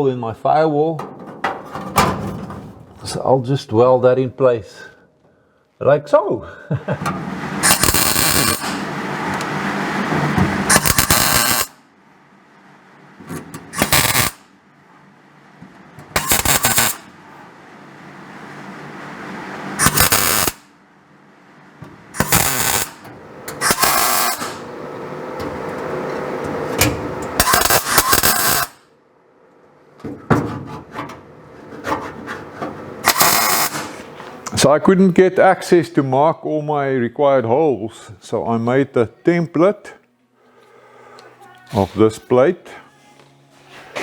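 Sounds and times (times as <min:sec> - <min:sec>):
crackling welding arc: 0:07.6 - 0:09.0, 0:10.7 - 0:11.8, 0:13.7 - 0:14.5, 0:16.2 - 0:17.1, 0:19.8 - 0:20.7, 0:22.2 - 0:23.0, 0:23.6 - 0:24.7, 0:27.4 - 0:28.9, 0:33.0 - 0:34.0.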